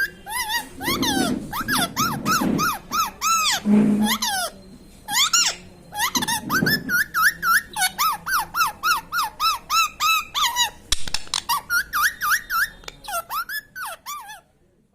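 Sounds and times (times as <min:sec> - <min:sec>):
parrot squawking: 0:00.0 - 0:14.5
sharp click: 0:10.9 - 0:11.5.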